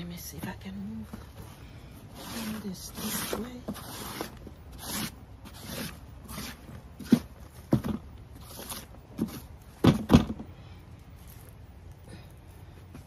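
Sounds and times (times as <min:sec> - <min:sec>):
grow bag rustling and scraping: 0:00.4 - 0:09.8, 0:11.0 - 0:11.7
dull thumps: 0:07.0 - 0:08.2, 0:09.1 - 0:10.6.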